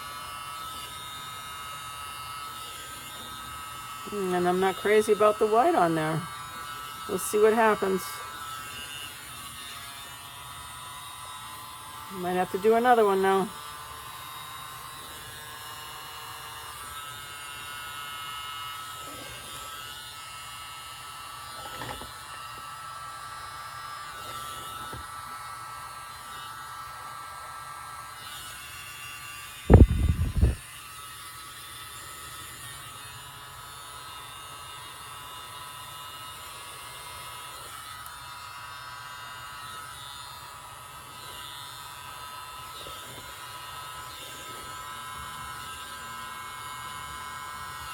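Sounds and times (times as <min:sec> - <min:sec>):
small blower buzzing whine: 0:00.0 - 0:47.9.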